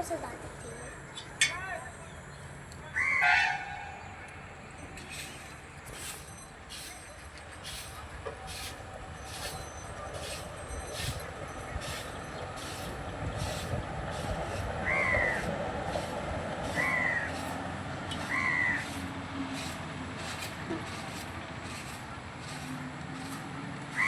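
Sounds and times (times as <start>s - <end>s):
crow cawing: 14.8s - 15.5s, 16.7s - 17.5s, 18.2s - 19.0s.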